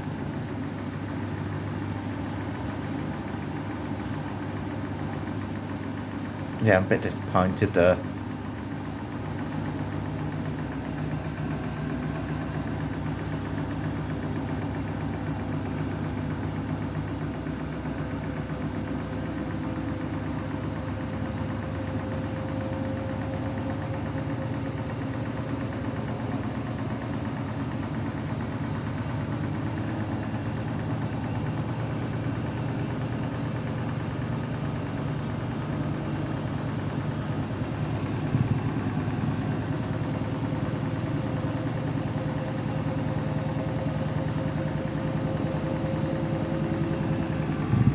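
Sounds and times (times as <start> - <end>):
washing machine motor drone: 0.0 - 47.9.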